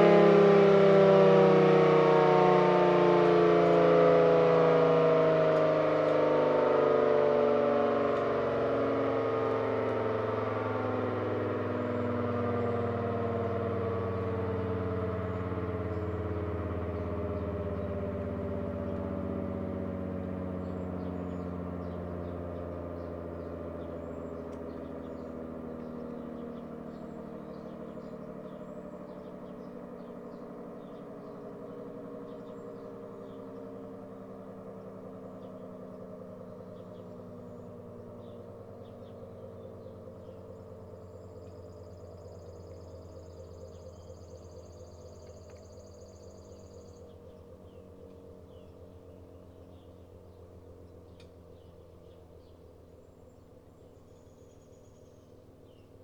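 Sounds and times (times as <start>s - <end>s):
rotating siren winding down: 0.0s - 23.3s.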